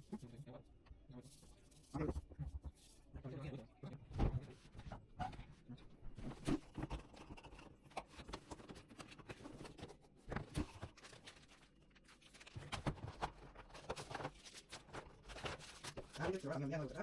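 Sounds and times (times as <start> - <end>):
objects being handled: 4.0 - 17.0.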